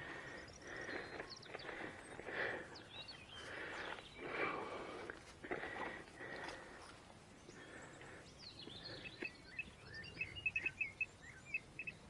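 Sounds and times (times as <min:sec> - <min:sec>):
faint outdoor background noise: 0:00.0 - 0:12.0
small birds chirping: 0:00.0 - 0:12.0.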